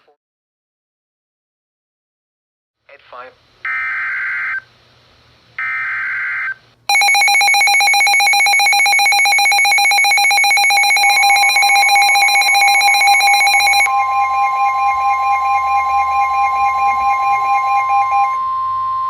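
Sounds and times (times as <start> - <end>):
rapidly pulsing electronic alert tone: 6.9 - 18.4
steady high electronic tone: 6.9 - 19.0.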